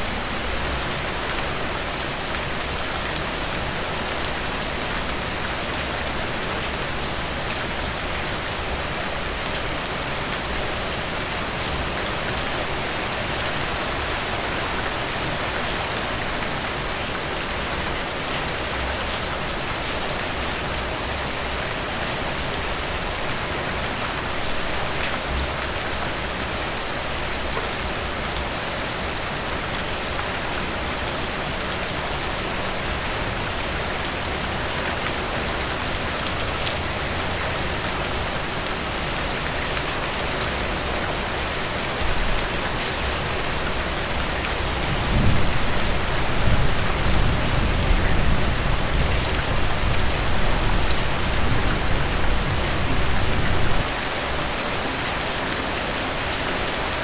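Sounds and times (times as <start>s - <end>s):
heavy rain falling: 0.0s - 57.0s
low rumble of thunder: 44.8s - 53.8s.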